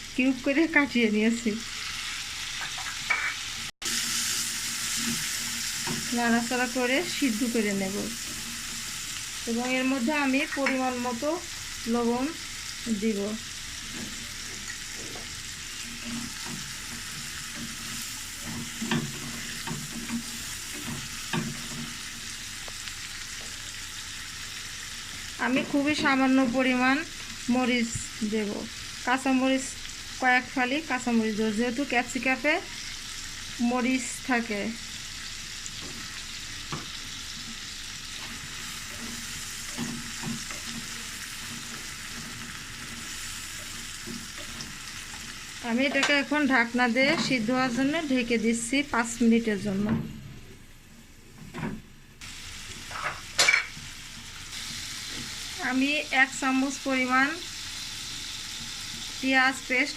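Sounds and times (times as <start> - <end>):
vegetables sizzling in oil: 0.0 - 49.9, 52.2 - 59.9
spatula scraping pan: 13.8 - 22.1.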